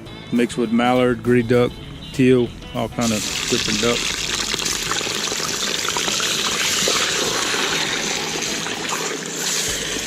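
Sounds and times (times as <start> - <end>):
meat sizzling in hot oil: 3.2 - 10.0.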